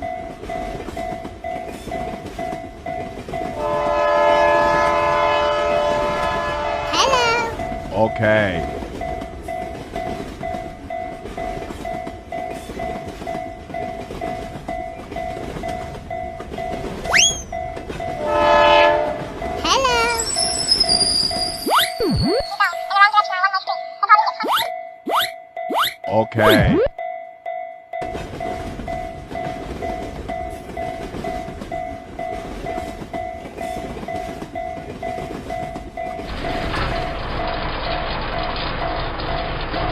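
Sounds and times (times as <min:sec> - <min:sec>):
passing train rumble: 0:00.0 - 0:21.7, 0:28.0 - 0:39.9
level-crossing warning bell: 0:00.0 - 0:22.0, 0:22.6 - 0:39.9
train horn blast: 0:03.6 - 0:07.0, 0:18.2 - 0:19.4.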